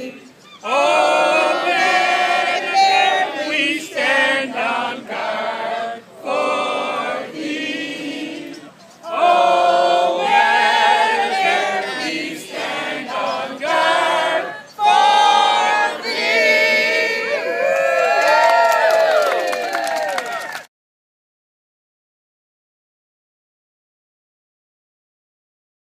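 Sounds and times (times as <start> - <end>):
group singing unaccompanied: 0.0 - 17.5.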